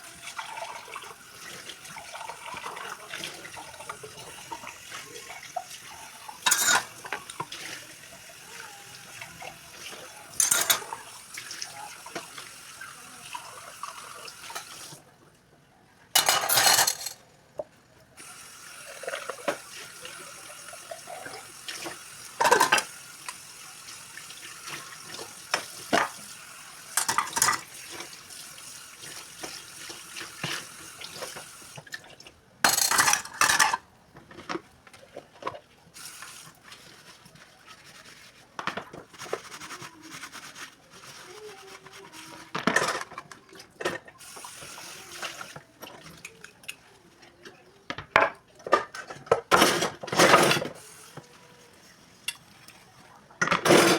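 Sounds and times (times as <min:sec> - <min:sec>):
tap water running: 0:00.0 - 0:15.1, 0:18.2 - 0:46.9, 0:47.7 - 0:52.9
dishes clinking and clattering: 0:02.0 - 0:07.6, 0:09.8 - 0:11.2, 0:16.2 - 0:17.2, 0:20.9 - 0:23.4, 0:26.9 - 0:28.2, 0:32.6 - 0:35.7, 0:42.5 - 0:44.2, 0:47.9 - 0:50.8, 0:53.4 - 0:53.9.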